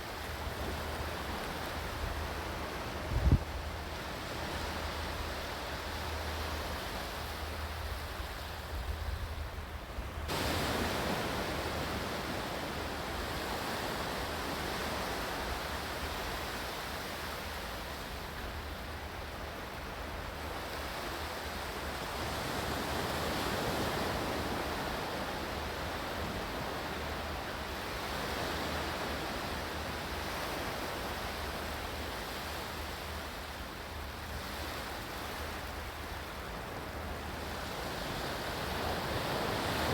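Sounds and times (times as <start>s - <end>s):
ocean surf: 10.3s - 39.9s.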